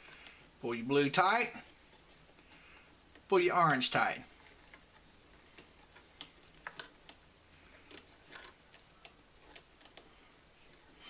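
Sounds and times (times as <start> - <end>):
cord being pulled tight: 5.6 - 8.8.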